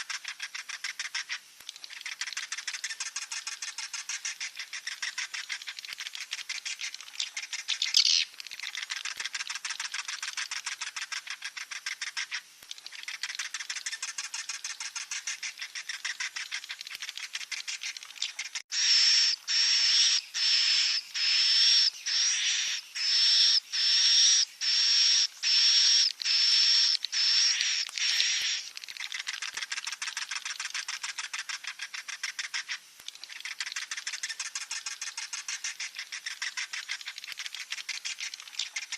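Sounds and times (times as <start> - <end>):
drawn-out high bird calls: 0.0 - 29.4
swiftlet chicks chattering: 0.0 - 38.9.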